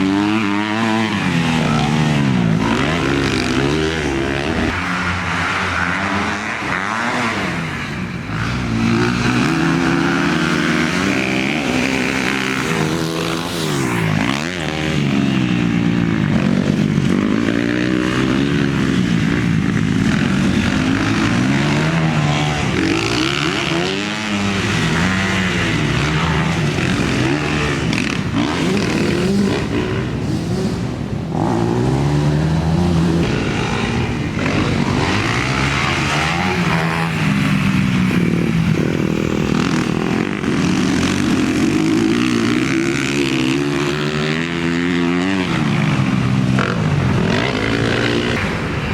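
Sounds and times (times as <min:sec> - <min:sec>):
dirt bike engine revving: 0:00.0 - 0:48.9.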